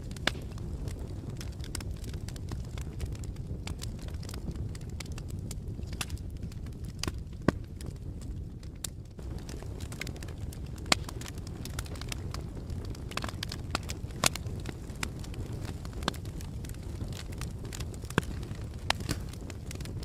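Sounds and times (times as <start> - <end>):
campfire crackling: 0.0 - 20.0
low rumble of flame: 0.0 - 20.0
wood popping and snapping: 0.1 - 0.6, 8.8 - 12.3, 13.1 - 20.0.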